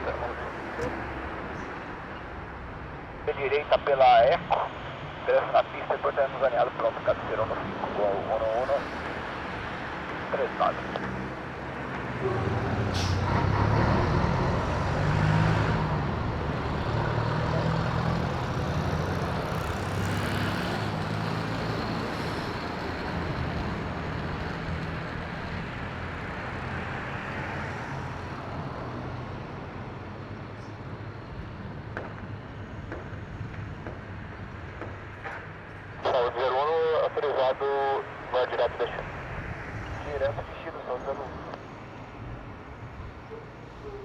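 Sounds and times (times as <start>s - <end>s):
jet engines roaring: 0.0s - 16.7s, 33.8s - 42.8s.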